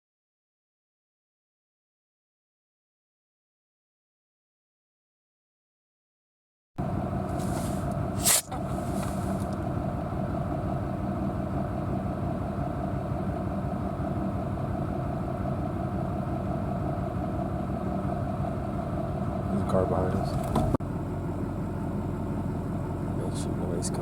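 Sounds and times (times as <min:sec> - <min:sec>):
vehicle engine and road noise: 0:06.8 - 0:24.0.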